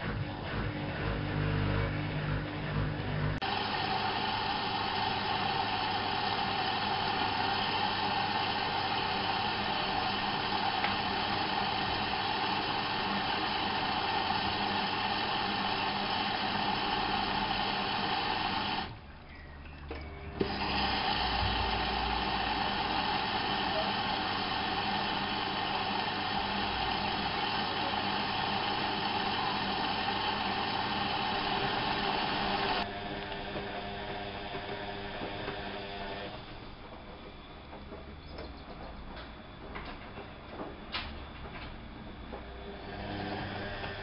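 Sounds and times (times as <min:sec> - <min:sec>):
washing machine electric whine: 0:00.0 - 0:44.0.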